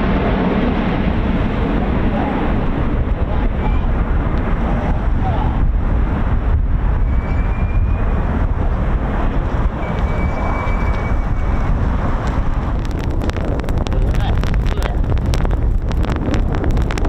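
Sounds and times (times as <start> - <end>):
wind buffeting microphone: 0.0 - 17.0
faint thin whistle: 7.0 - 8.1, 9.8 - 11.8.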